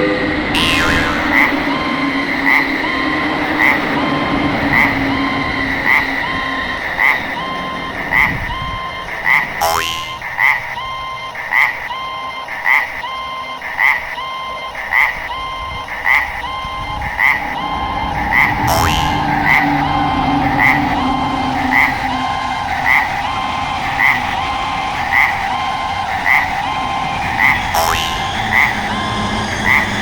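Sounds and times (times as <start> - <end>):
passing train rumble: 0.0 - 9.6, 16.4 - 30.0
railroad crossing warning bell: 0.0 - 11.3, 11.9 - 30.0.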